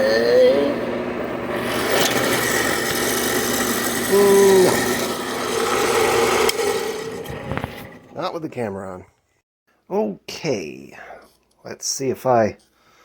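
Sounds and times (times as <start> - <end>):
motor whine: 0.0 - 8.2
power tool rasping wood: 0.0 - 8.2.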